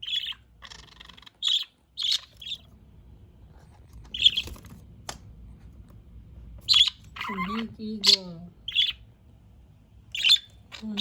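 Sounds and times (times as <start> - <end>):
budgerigar chirping: 0.0 - 2.6, 4.1 - 4.5, 6.7 - 9.0, 10.1 - 11.0.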